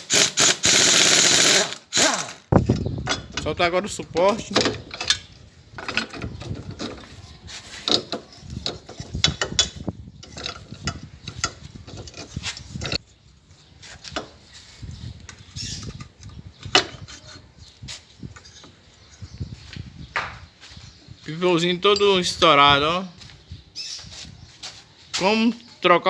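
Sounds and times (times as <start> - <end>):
ratchet wrench clicks and knocks: 0.0 - 2.4.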